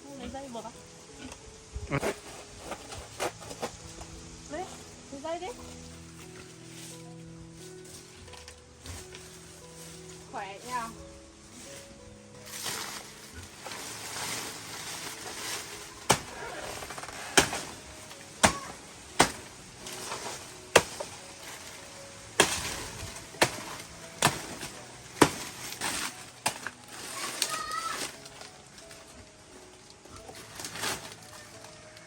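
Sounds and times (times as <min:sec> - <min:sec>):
blade chopping into wood: 0:16.1 - 0:17.8, 0:18.4 - 0:21.2, 0:22.4 - 0:26.7.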